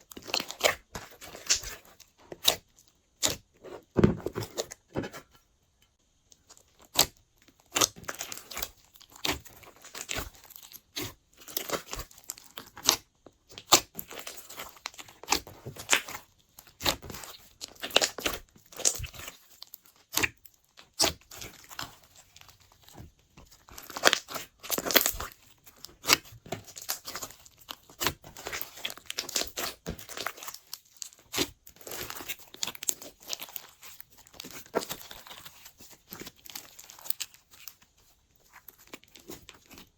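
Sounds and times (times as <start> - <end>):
slime popping and crackling: 6.8 - 22.9, 23.7 - 37.8.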